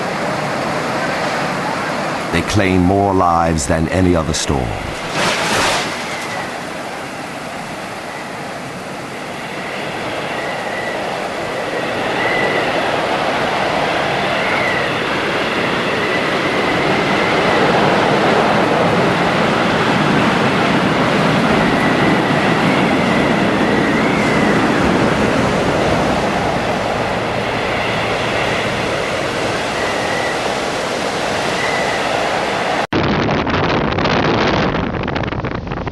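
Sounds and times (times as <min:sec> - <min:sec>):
hurricane wind roaring: 0:00.0 - 0:35.9
faint wavering whistle: 0:27.9 - 0:30.6, 0:31.4 - 0:32.2.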